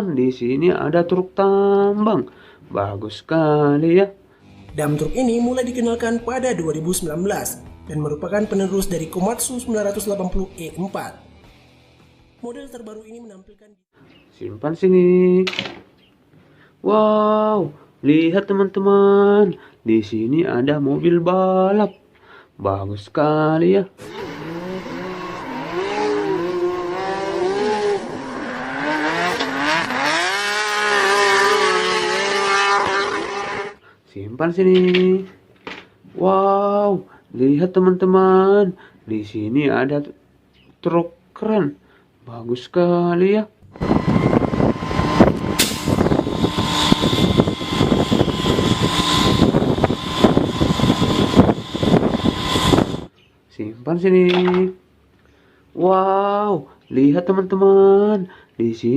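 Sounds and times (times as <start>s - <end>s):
racing car engine revving: 24.0s - 33.8s, 43.7s - 53.1s.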